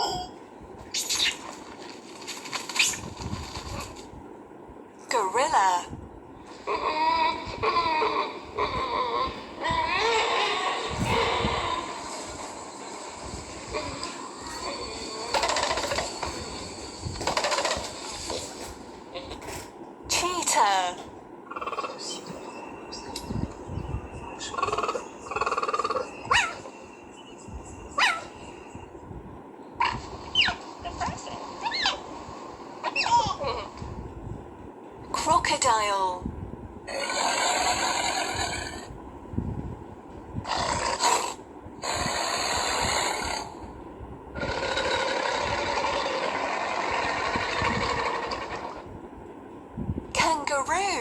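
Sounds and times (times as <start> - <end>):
cheetah churring: 24.4 - 26.7, 40.4 - 43.7, 44.4 - 48.9
crocodile hissing: 36.9 - 38.9, 40.5 - 43.6, 44.4 - 48.8.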